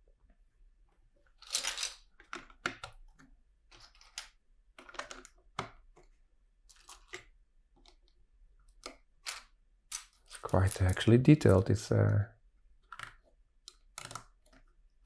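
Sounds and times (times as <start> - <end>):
plastic bricks clicking: 1.4 - 5.9, 12.8 - 14.7.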